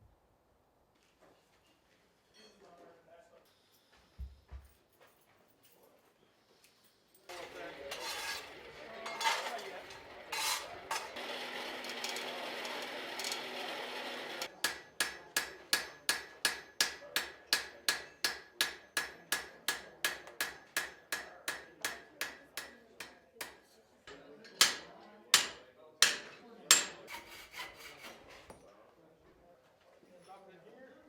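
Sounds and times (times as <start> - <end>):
hammer striking metal on anvil: 7.3 - 27.3.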